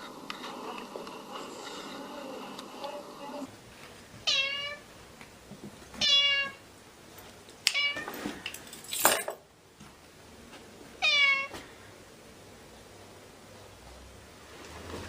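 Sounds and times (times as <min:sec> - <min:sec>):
cat meowing: 0:04.2 - 0:04.8, 0:06.0 - 0:06.6, 0:11.0 - 0:11.5.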